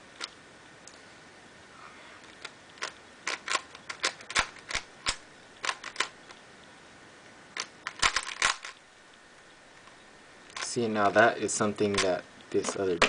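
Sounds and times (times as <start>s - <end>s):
puzzle cube layers clacking: 2.2s - 6.4s, 7.6s - 8.8s, 11.8s - 13.0s.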